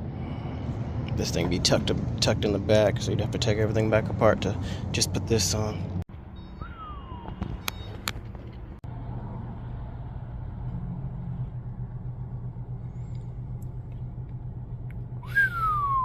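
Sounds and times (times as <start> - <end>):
low mechanical hum: 6.1 - 16.0
falling whistle-like tone: 6.4 - 8.0, 15.2 - 16.0.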